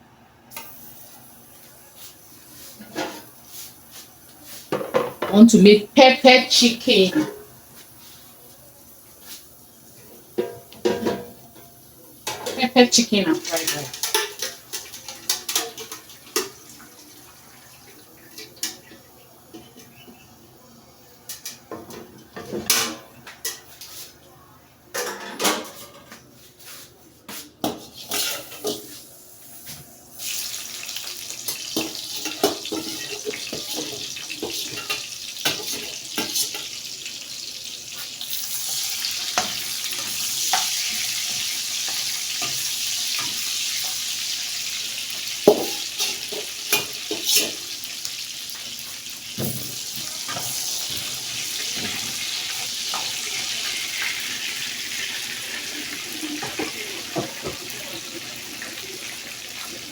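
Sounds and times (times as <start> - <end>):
pots and utensils clattering: 2.6 - 3.8, 4.5 - 5.5, 10.0 - 16.9, 17.7 - 20.2, 21.2 - 24.2, 24.9 - 26.3, 27.3 - 37.0, 38.0 - 44.4, 45.0 - 59.9
food frying in hot oil: 6.0 - 20.4, 27.8 - 59.9.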